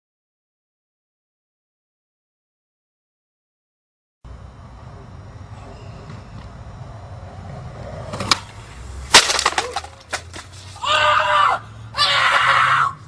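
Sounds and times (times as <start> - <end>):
loud crack with clatter: 8.1 - 10.8
person crying out: 10.8 - 13.0.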